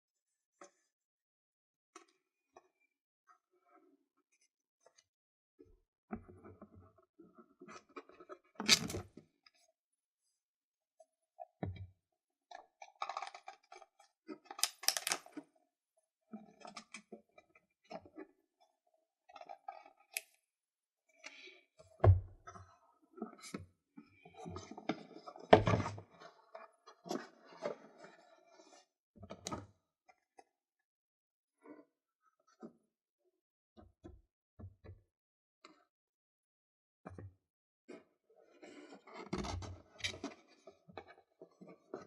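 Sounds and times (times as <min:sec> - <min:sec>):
packaging rustles and clicks: 0:14.6 - 0:15.2.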